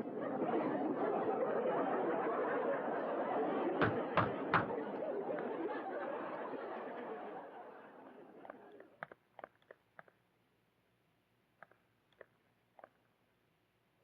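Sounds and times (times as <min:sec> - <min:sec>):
crowd laughing and chattering: 0:00.0 - 0:09.0.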